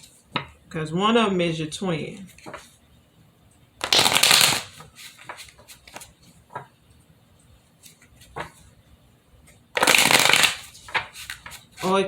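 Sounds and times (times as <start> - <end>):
cards being shuffled: 3.8 - 6.7, 9.8 - 12.0.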